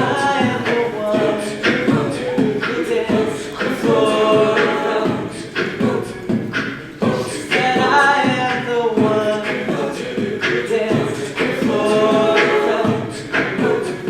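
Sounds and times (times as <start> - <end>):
vocal group singing in harmony: 0.0 - 14.0
vocal percussion beat: 0.0 - 14.0.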